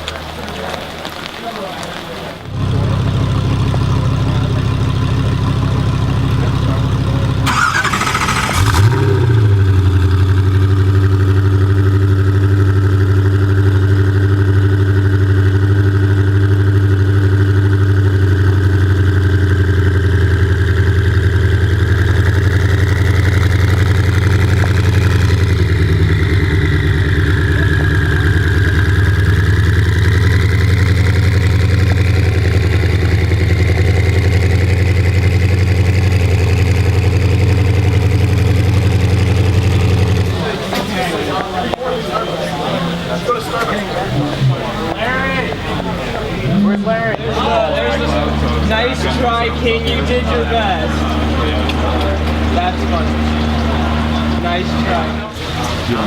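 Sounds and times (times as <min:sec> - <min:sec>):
car engine idling: 0:00.0 - 0:56.0
brief noise burst: 0:07.4 - 0:09.7.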